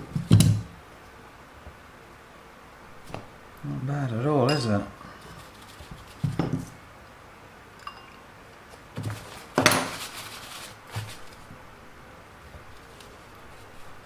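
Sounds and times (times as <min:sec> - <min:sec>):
utensils clinking against dishes: 0:04.5 - 0:04.8, 0:07.8 - 0:08.2.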